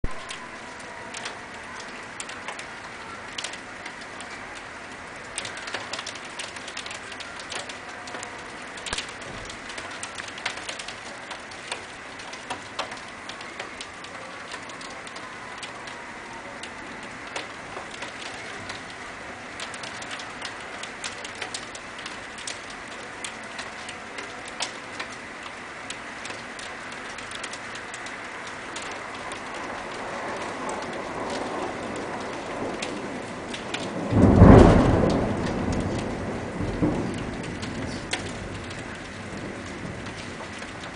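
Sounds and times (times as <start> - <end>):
steady rain: 0.0 - 40.9
low rumble of thunder: 28.8 - 40.9.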